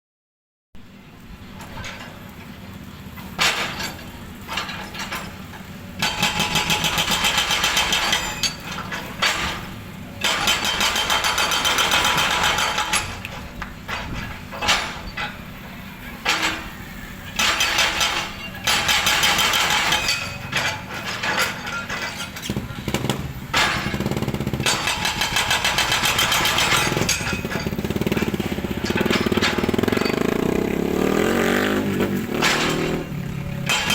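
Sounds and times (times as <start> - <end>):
jackhammer hammering: 6.0 - 15.3, 17.4 - 33.9
engine hum: 11.6 - 33.9.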